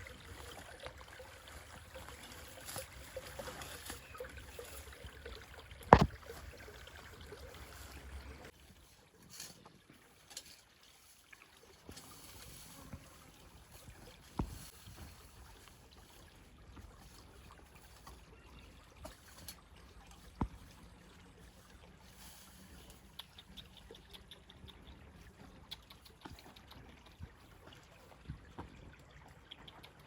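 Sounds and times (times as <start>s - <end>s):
river water running and splashing: 0.0s - 23.0s.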